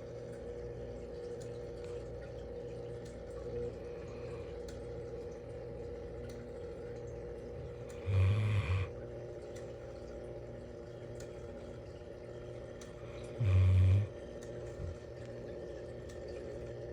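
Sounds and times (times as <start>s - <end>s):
steady background hum: 0.0s - 16.9s
dog snoring: 7.8s - 8.9s, 13.0s - 14.1s.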